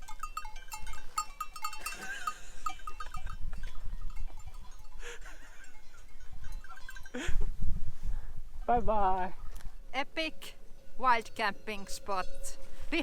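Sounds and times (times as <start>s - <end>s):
livestock bells clinking: 0.0s - 7.6s, 8.8s - 13.0s
wind on microphone: 6.1s - 9.9s.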